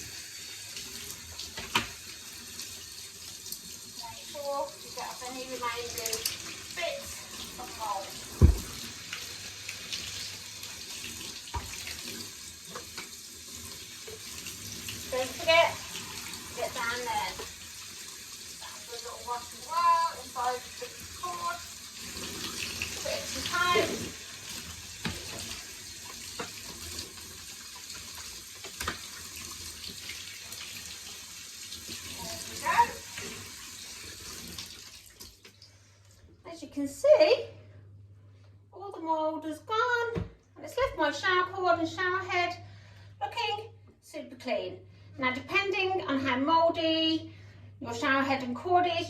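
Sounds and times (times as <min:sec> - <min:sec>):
running water rinsing: 0:00.0 - 0:35.9.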